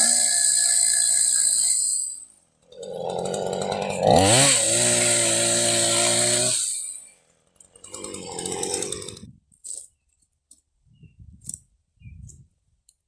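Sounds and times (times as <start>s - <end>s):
small engine revving: 0.0s - 9.3s.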